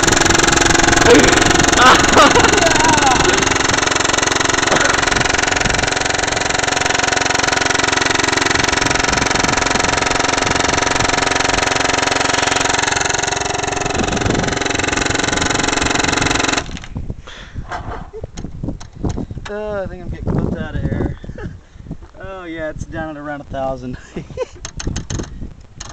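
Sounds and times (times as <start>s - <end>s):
paintball gun rapid firing: 0.0s - 16.9s.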